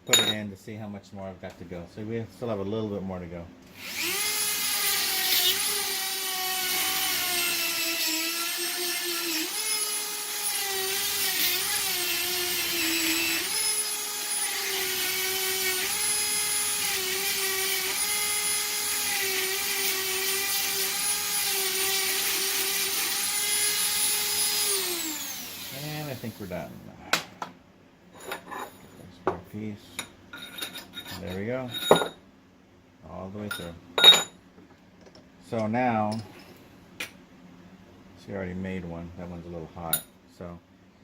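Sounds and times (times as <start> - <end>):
rotary tool grinding metal: 3.8 - 26.4.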